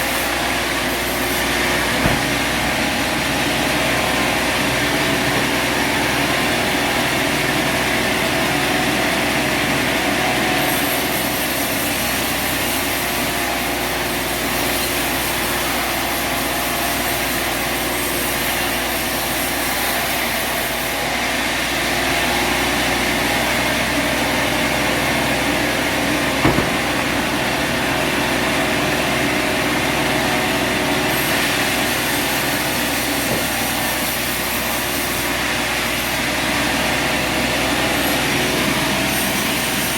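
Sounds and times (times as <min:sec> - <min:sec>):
sawmill engine running: 0:00.0 - 0:16.6, 0:22.2 - 0:39.9
short knock: 0:01.9 - 0:02.7, 0:26.4 - 0:27.3, 0:33.2 - 0:33.8.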